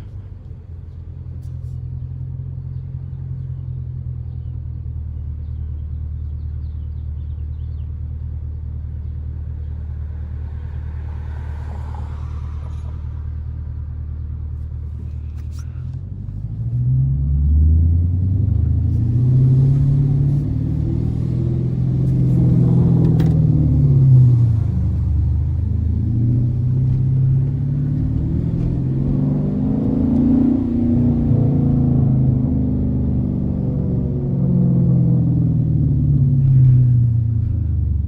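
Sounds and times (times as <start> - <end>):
car engine accelerating: 9.0 - 38.0.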